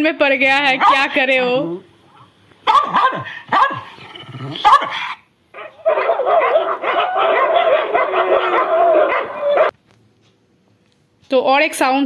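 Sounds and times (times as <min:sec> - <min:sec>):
dog yelps through speaker: 0:00.8 - 0:01.2, 0:02.6 - 0:03.9, 0:04.6 - 0:09.8.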